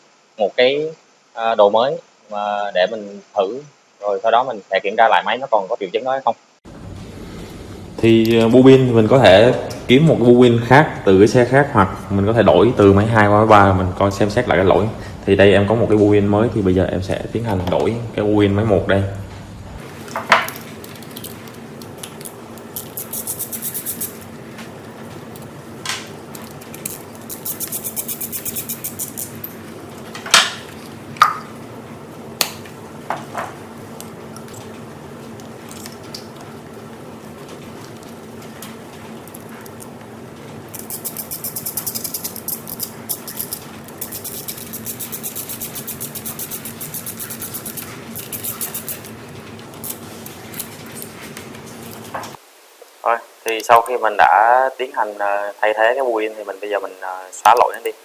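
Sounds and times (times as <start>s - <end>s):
steady low hum: 6.4s - 54.3s
ratchet clicking: 22.8s - 24.2s, 26.8s - 29.5s, 40.8s - 49.1s.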